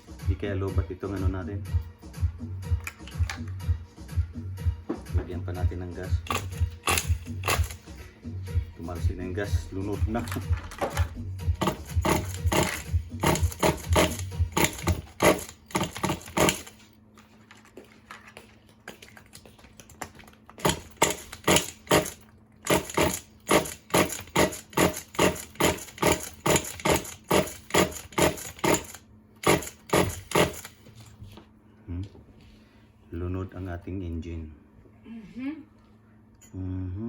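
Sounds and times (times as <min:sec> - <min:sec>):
starter motor cranking engine: 0:06.2 - 0:08.0, 0:09.8 - 0:16.8, 0:20.5 - 0:30.8.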